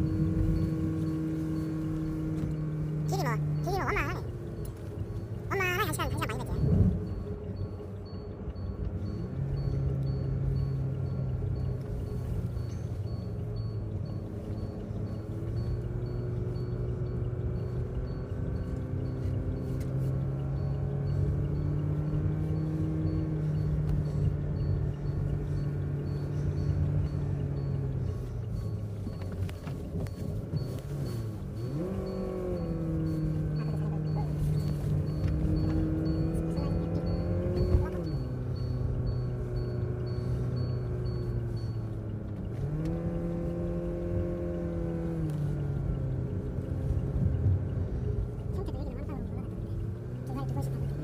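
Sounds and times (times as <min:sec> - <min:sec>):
car engine hum: 0:00.0 - 0:51.0
road noise inside car: 0:00.0 - 0:51.0.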